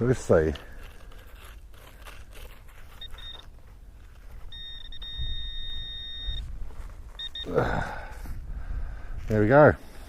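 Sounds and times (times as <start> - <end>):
metal detector beeps: 2.9 - 8.2.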